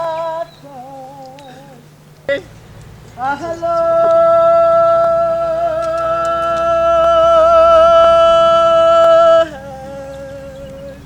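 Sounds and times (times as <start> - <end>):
person chanting sustained note: 3.2 - 11.0.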